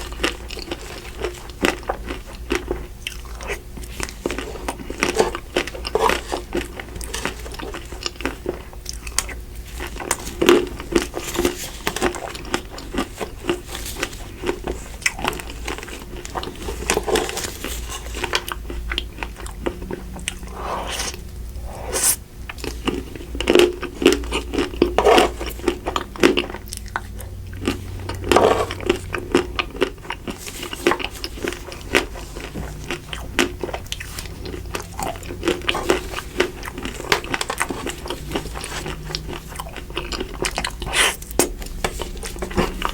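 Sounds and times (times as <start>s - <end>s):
biting and chewing ice cream: 0.0s - 42.9s
chocolate coating crunching: 0.0s - 42.9s.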